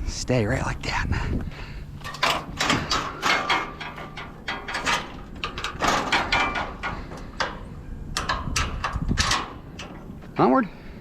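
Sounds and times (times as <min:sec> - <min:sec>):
scrap appliances clanking and rattling: 0:02.0 - 0:10.5.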